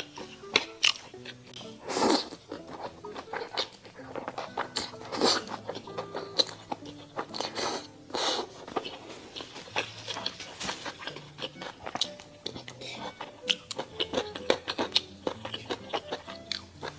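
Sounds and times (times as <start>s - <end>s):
chewing and wet mouth noises: 0.0s - 16.9s
crunchy bites: 0.0s - 16.9s.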